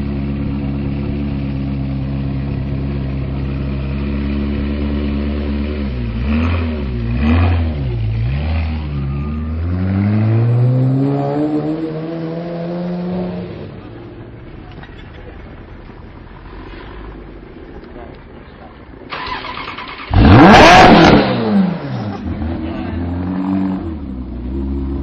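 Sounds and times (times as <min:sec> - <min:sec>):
car engine idling: 0:00.0 - 0:06.2, 0:13.7 - 0:20.5
engine revving: 0:04.1 - 0:13.9, 0:19.1 - 0:25.0.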